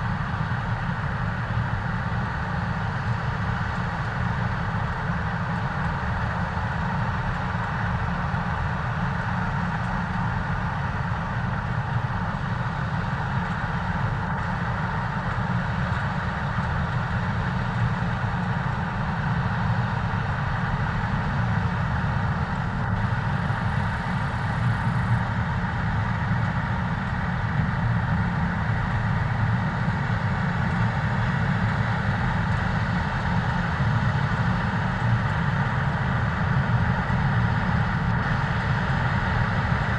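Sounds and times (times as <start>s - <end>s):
combine harvester running: 0.0s - 39.9s.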